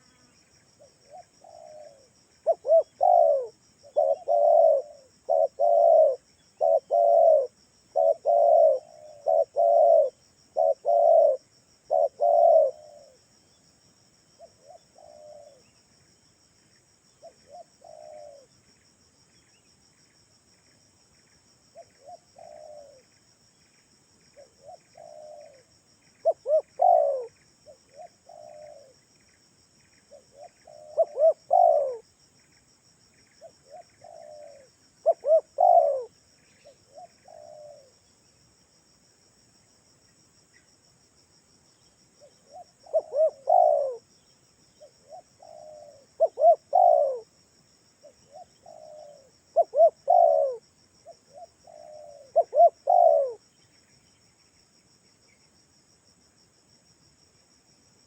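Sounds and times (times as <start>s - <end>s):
dove cooing: 0.8s - 13.2s, 14.4s - 15.6s, 17.2s - 18.5s, 21.8s - 23.1s, 24.4s - 29.0s, 30.1s - 32.0s, 33.4s - 38.0s, 42.2s - 44.1s, 44.8s - 47.4s, 48.0s - 53.4s.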